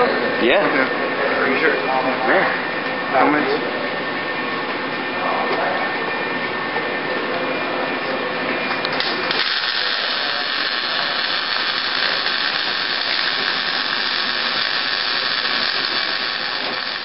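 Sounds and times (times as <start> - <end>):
arc welder sizzling and crackling: 8.9 - 17.0.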